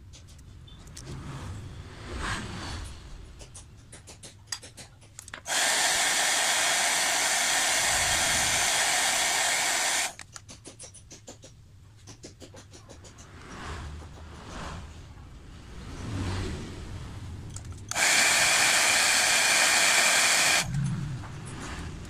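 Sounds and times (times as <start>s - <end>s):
hair dryer blowing: 5.5s - 10.2s, 17.9s - 20.7s.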